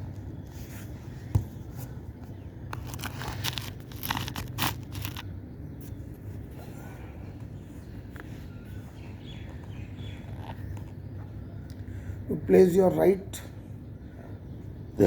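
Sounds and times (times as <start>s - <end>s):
rustling and crinkling: 0.4s - 6.1s.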